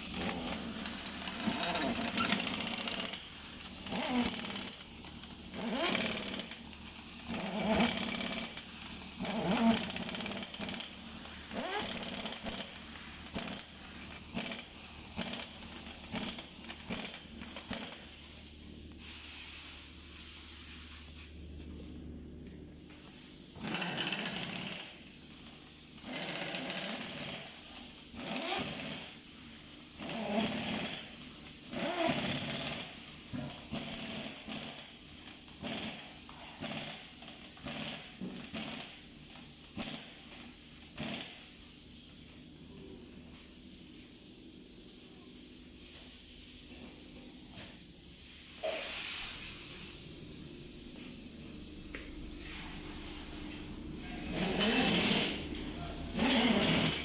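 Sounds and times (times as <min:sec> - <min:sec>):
pneumatic impact wrench bursts: 0:00.0 - 0:19.8, 0:23.1 - 0:42.0, 0:47.5 - 0:57.0
steady high hiss: 0:48.0 - 0:56.2.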